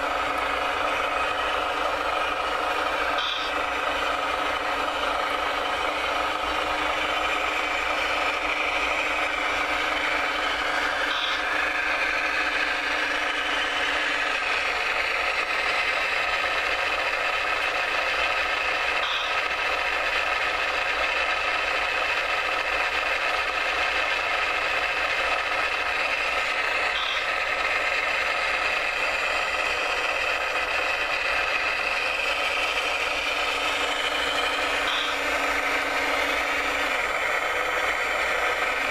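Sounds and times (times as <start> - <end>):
electric motors whining: 0.0 - 38.9.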